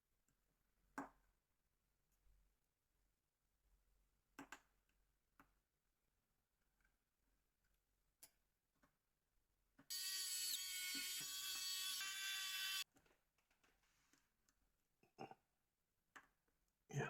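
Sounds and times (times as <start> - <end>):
small electric motor whirring: 9.9 - 12.8.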